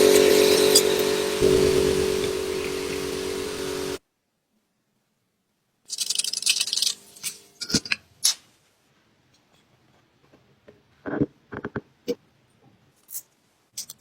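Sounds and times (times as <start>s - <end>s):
metal scraping: 0.0s - 4.0s.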